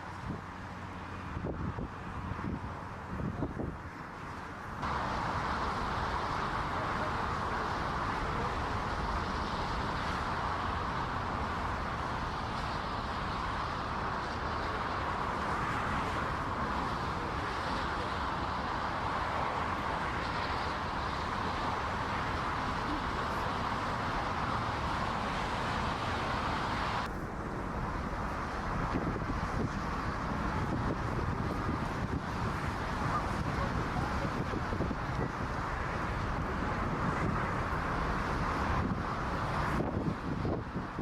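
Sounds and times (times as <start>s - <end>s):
jet engine roar: 0.0s - 41.0s.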